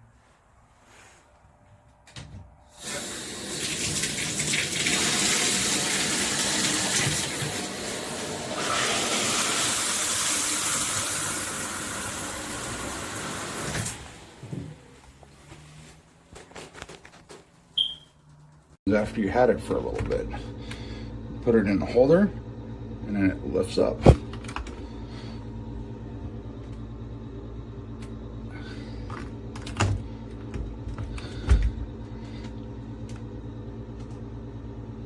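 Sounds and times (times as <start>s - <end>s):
shower head spraying water: 2.8s - 14.0s.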